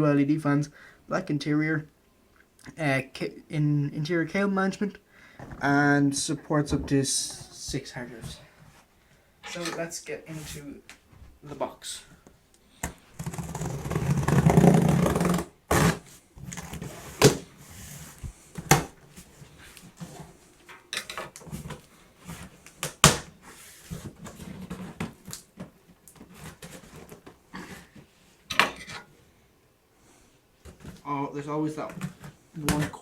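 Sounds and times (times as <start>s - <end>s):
cardboard rasping and rustling: 13.1s - 20.4s, 26.2s - 28.0s.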